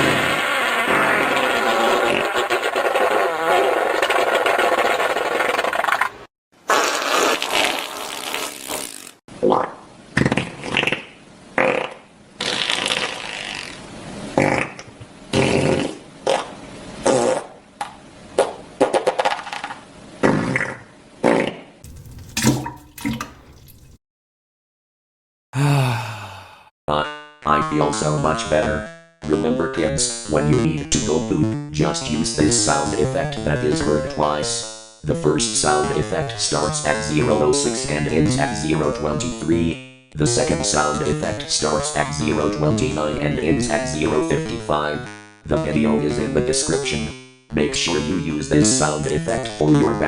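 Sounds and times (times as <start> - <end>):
farts: 0.0 - 6.1, 6.7 - 13.8, 14.4 - 17.6, 18.4 - 21.5.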